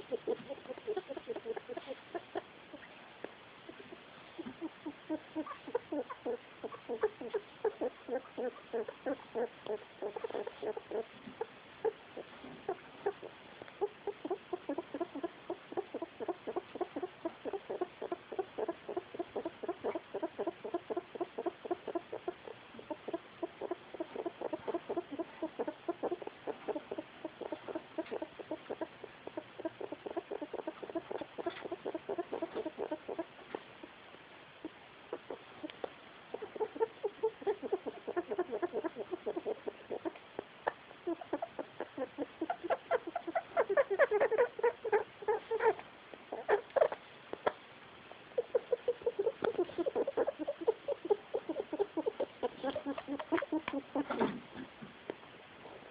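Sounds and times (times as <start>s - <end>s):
rat clucking: 0.0s - 47.6s, 48.3s - 54.8s.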